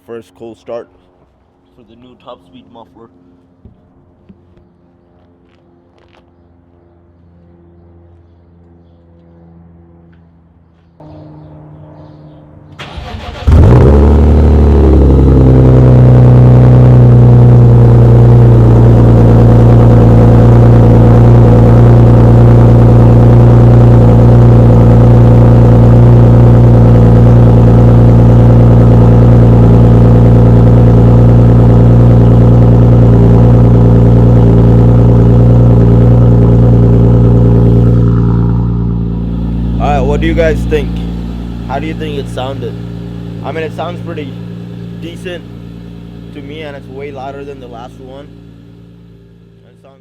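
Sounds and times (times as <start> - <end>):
car engine starting and idling: 11.0 - 50.0
engine cranking: 12.8 - 14.4, 39.8 - 49.0.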